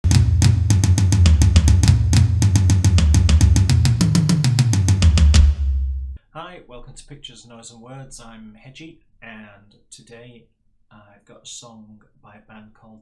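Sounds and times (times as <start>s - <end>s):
drum kit beat: 0.0s - 6.2s
low bass line: 0.0s - 6.2s.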